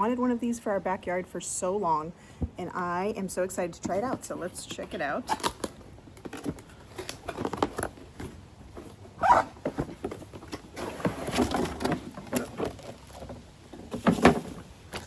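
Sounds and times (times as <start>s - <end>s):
cardboard box scraping and rustling: 3.8s - 15.0s.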